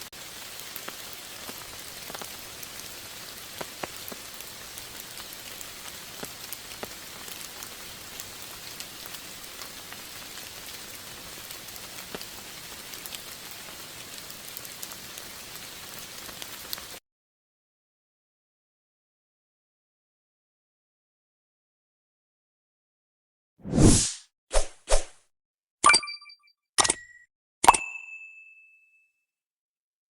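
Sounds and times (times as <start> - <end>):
steady rain hiss: 0.0 - 17.0
raindrop ticks: 0.4 - 9.8.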